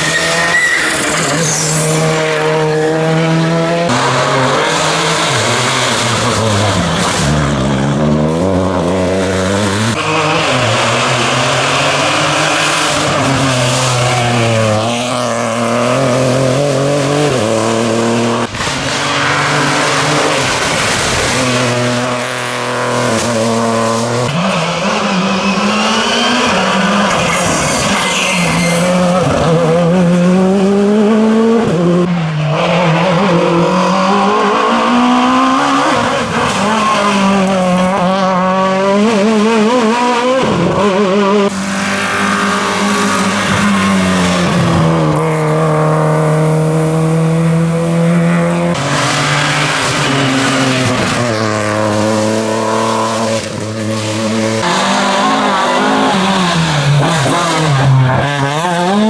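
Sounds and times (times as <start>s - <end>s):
tyre squeal: 0.0s - 3.0s, 25.7s - 30.1s
rally car engines revving: 0.0s - 59.0s.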